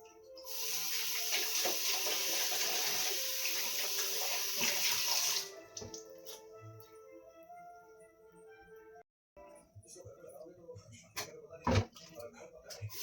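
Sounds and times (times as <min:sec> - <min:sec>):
tap water running into sink: 0:00.4 - 0:06.4.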